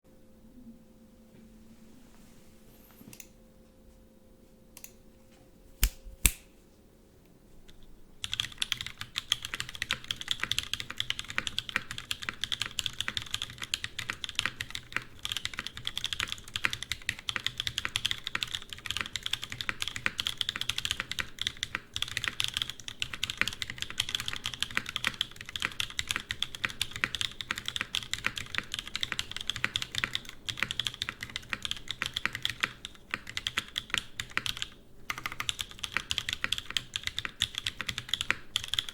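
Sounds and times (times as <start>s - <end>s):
mechanical keyboard typing: 8.2s - 38.9s.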